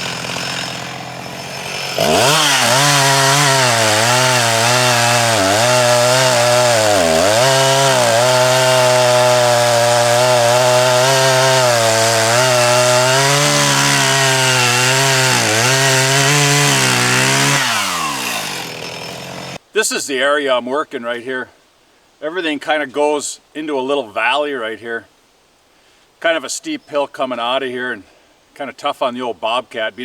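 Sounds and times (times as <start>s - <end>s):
chainsaw cutting wood: 0.0s - 19.6s.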